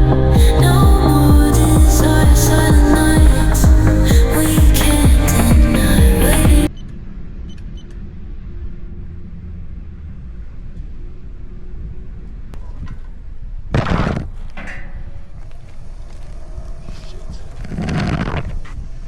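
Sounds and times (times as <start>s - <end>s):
electronic background music: 0.0s - 6.7s
rush of noise: 0.0s - 6.7s
steady low rumble: 0.0s - 6.7s.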